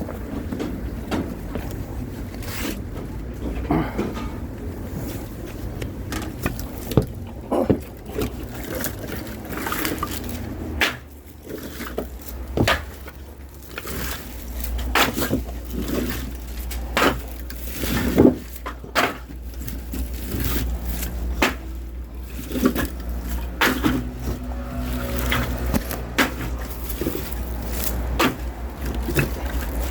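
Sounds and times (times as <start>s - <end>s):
irregular knocks and clunks: 6.0s - 8.9s, 11.7s - 13.4s.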